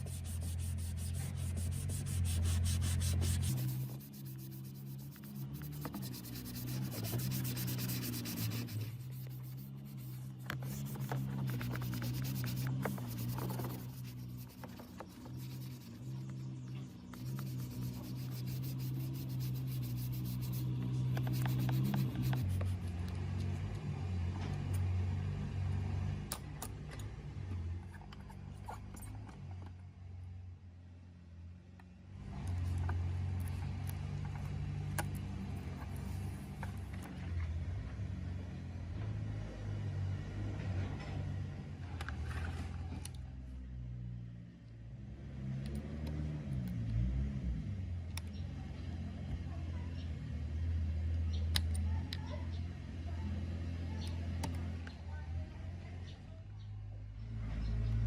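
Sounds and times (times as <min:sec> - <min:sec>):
hand rubbing and scraping: 0:00.0 - 0:23.0.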